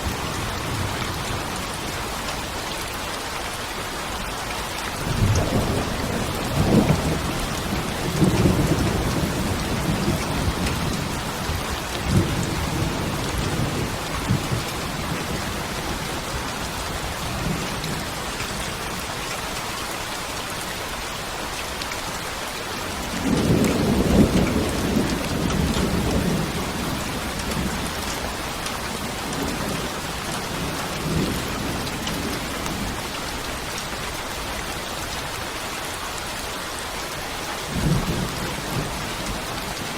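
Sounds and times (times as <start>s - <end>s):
steady rain falling: 0.0s - 39.9s
low rolls of thunder: 5.0s - 18.1s, 23.2s - 33.1s, 37.7s - 39.9s.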